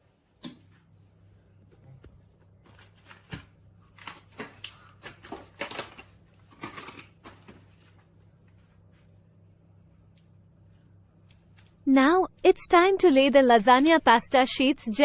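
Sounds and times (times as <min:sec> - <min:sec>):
steady low hum: 0:00.0 - 0:15.0
food scraping and rustling: 0:02.5 - 0:09.2.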